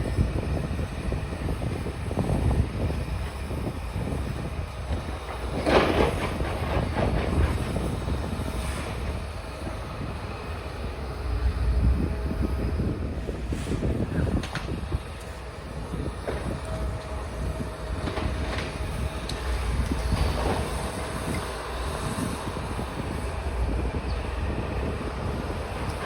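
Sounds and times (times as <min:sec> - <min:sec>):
low mechanical rumble: 0:06.4 - 0:26.0.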